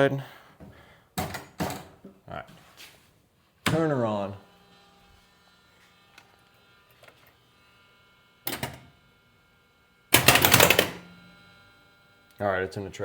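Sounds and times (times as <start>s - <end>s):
steady electrical hum: 0.0s - 13.0s
rapid clatter of coils resetting: 10.2s - 11.1s.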